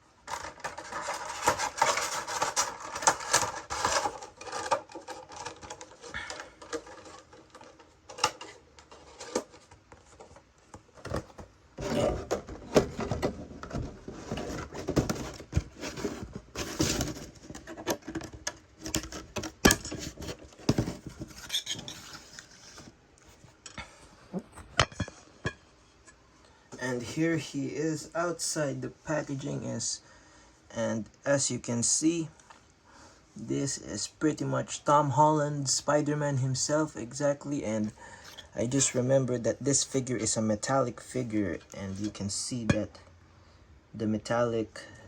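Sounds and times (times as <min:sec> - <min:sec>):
cardboard box rustling and scraping: 0:00.3 - 0:23.4.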